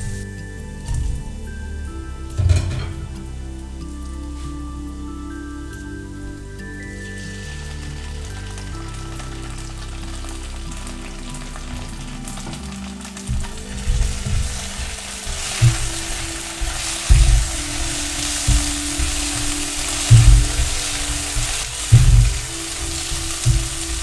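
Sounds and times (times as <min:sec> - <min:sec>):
snacks sizzling in hot oil: 0:00.0 - 0:24.0
soft background music: 0:00.0 - 0:24.0
low thumps from pan: 0:02.3 - 0:03.5, 0:11.8 - 0:24.0.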